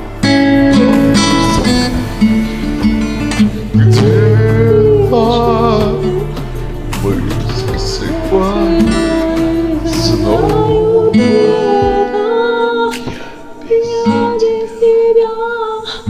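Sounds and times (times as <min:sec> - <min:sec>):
acoustic guitar: 0:00.0 - 0:16.0
woman singing long notes: 0:03.8 - 0:06.6, 0:07.4 - 0:16.0.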